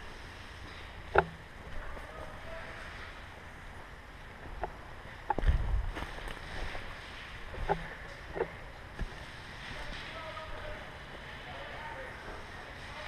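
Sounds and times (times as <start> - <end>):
steady noisy background: 0.0 - 13.0
wind buffeting microphone: 4.5 - 6.1.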